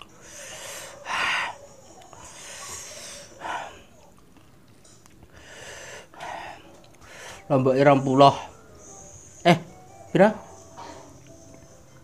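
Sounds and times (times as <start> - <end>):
man hissing breaths: 0.1 - 3.9, 5.3 - 7.5
man breathing hard: 0.1 - 4.0, 5.3 - 7.5.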